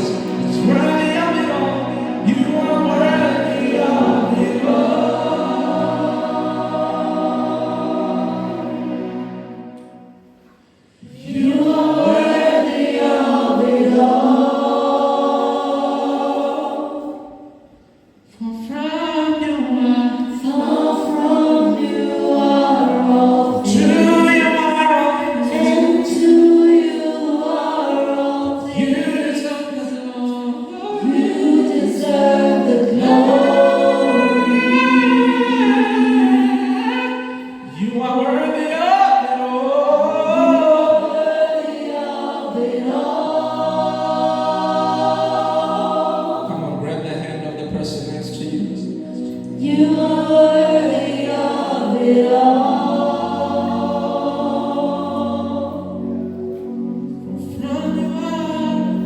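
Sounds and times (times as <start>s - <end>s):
vocal group singing in harmony: 0.0s - 59.0s.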